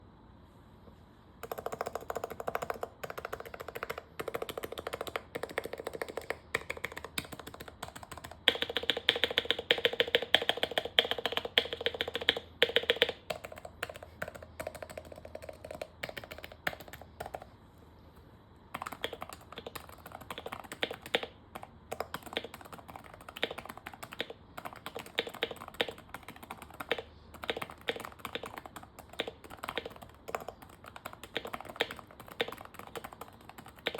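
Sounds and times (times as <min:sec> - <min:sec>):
soft keyboard keystrokes: 0:01.4 - 0:17.5, 0:18.7 - 0:33.9.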